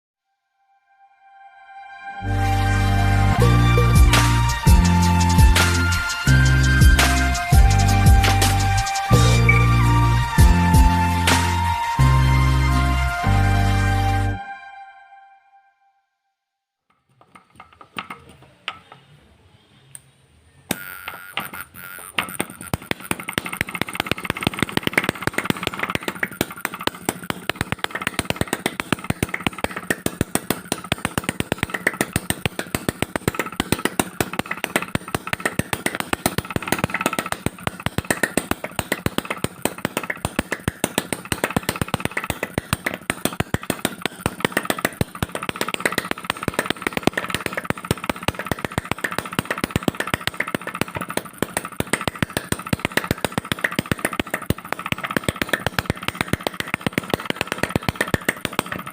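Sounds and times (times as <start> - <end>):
small engine firing pops: 20.7 - 58.9.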